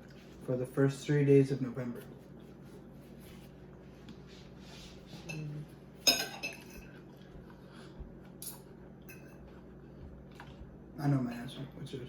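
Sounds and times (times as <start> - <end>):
utensil clinking against dish: 6.0 - 7.0, 8.4 - 9.5.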